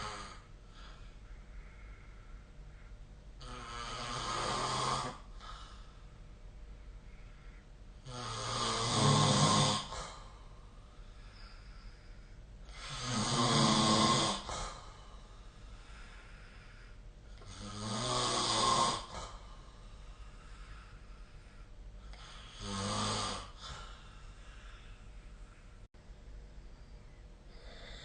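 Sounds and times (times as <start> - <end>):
person snoring: 0.0 - 1.0, 3.4 - 5.8, 8.0 - 10.3, 12.7 - 15.2, 15.9 - 19.6, 20.4 - 24.9, 27.5 - 28.0.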